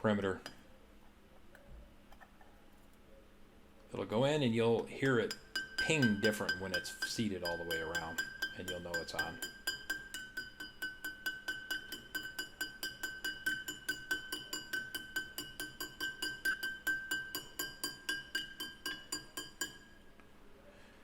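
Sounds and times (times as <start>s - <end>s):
hammer tapping metal: 4.7s - 20.0s.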